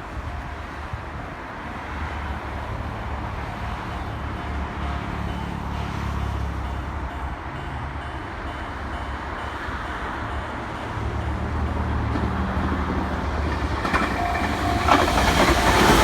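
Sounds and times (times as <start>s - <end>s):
train rumbling past: 0.0s - 16.0s
crossing warning bell dinging: 3.3s - 16.0s.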